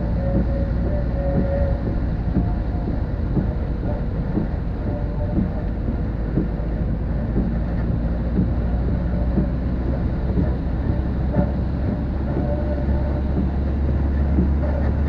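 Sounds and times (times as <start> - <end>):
small irregular taps: 4.3 - 10.7.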